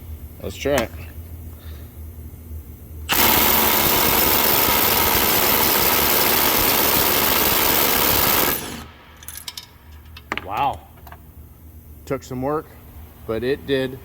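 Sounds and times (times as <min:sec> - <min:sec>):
impact driver hammering: 0:03.1 - 0:08.8.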